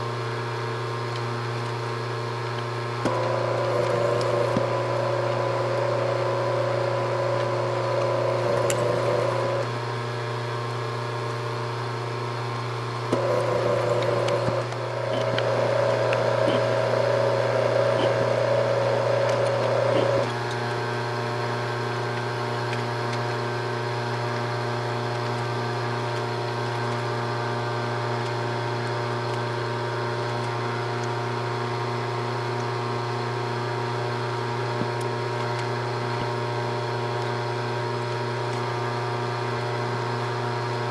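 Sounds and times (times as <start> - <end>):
milling machine humming: 2.8 - 40.9
high whine: 3.0 - 9.7, 13.1 - 20.3.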